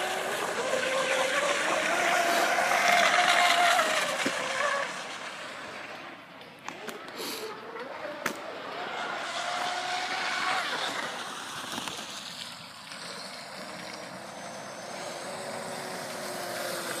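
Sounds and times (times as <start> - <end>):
boat hissing on water: 0.0 - 5.5
motorboat engine whine: 0.0 - 17.0.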